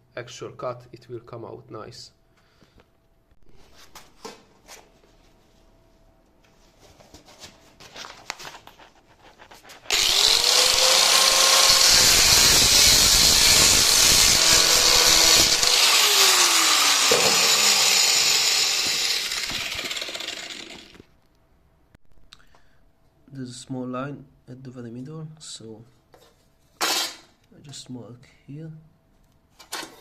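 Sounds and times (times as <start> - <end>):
angle grinder cutting metal: 9.9 - 21.0.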